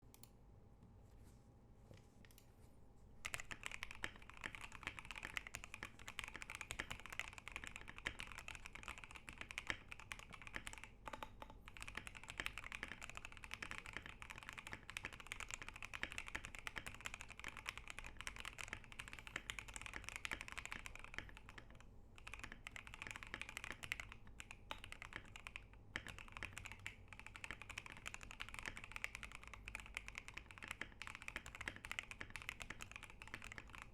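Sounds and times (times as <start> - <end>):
mechanical keyboard typing: 3.2 - 33.9.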